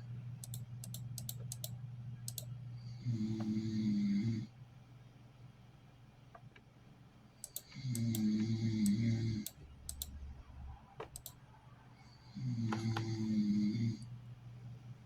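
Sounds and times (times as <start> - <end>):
sharp clicks: 0.4 - 2.5, 7.4 - 10.2, 11.0 - 11.4
person snoring: 3.0 - 4.5, 7.7 - 9.5, 12.2 - 14.1.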